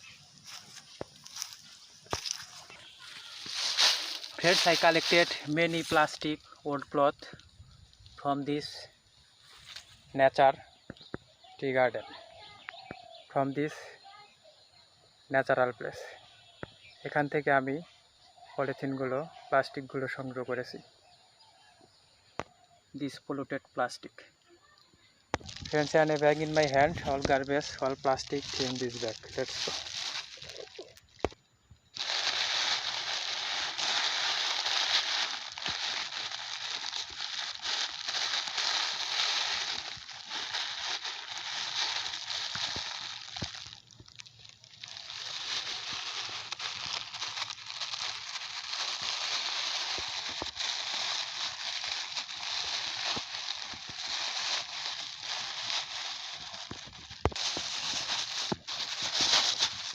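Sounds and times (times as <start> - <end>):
plastic bags rustling: 0.0 - 6.4, 25.4 - 31.4, 32.0 - 59.9.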